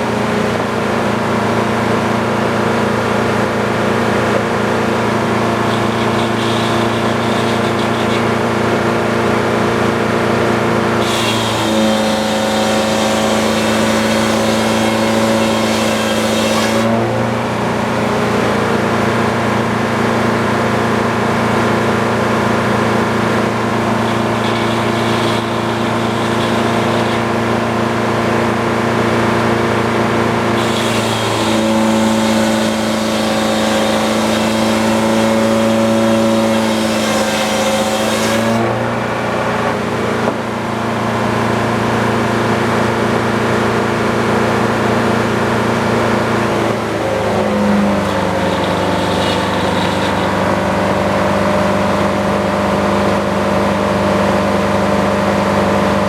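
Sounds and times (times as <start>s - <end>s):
sawmill engine running: 0.0s - 56.0s
saw cutting hiss: 23.8s - 27.4s, 30.6s - 38.6s, 46.8s - 50.7s.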